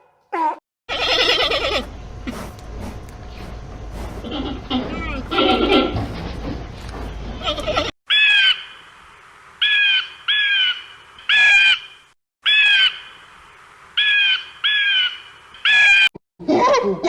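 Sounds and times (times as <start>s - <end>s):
bird squawking: 9.6s - 13.2s.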